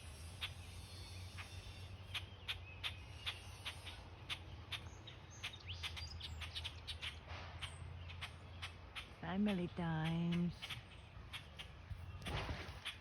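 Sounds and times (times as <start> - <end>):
upward-sweeping bird calls: 0.0 - 9.2
birds chirping: 0.0 - 13.0
low steady hum: 0.0 - 13.0.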